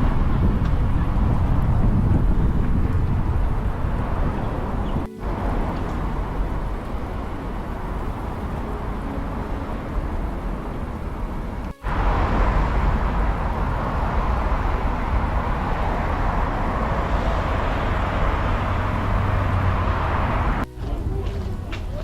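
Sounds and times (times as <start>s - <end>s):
outdoor rushing noise: 0.0s - 22.0s.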